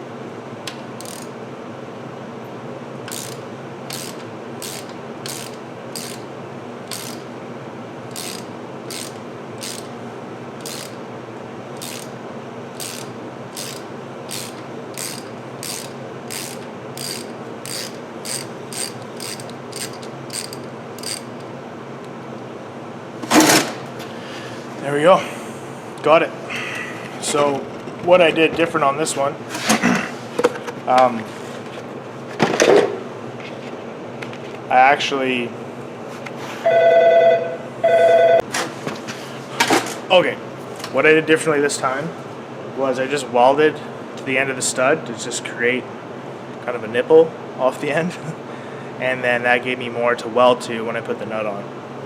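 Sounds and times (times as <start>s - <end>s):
steady low hum: 0.0s - 52.0s
ratchet wrench clicking: 1.0s - 1.3s, 3.1s - 6.2s, 6.9s - 7.2s, 8.1s - 9.9s, 10.6s - 11.0s, 11.8s - 12.1s, 12.8s - 21.5s.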